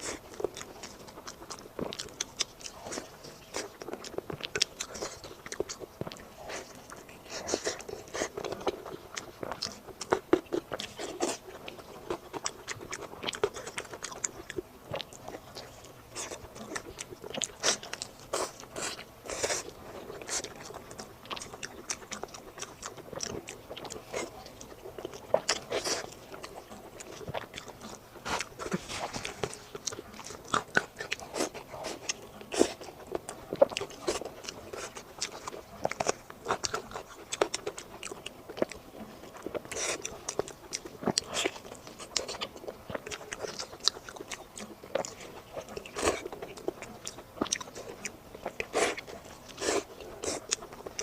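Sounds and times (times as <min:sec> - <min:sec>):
person chewing crunchy food: 0:00.0 - 0:51.0.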